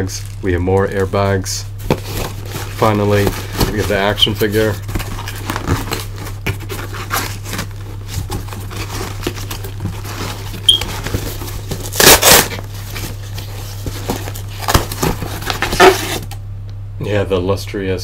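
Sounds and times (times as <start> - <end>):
plastic crinkle: 0.0 - 16.3
plastic packing rustling: 0.0 - 16.4
steady low hum: 0.0 - 18.0.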